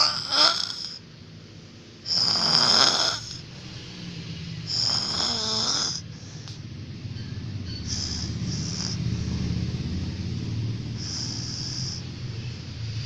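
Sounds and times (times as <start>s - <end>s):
man snoring with whistle: 0.0s - 1.0s, 2.1s - 3.5s, 4.6s - 6.2s, 7.7s - 9.3s, 10.9s - 12.7s.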